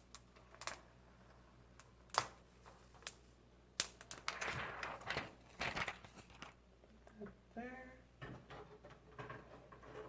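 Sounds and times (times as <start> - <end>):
plastic film peeling crackles: 0.0 - 0.9, 1.8 - 6.6
crinkly rustle: 4.1 - 6.6.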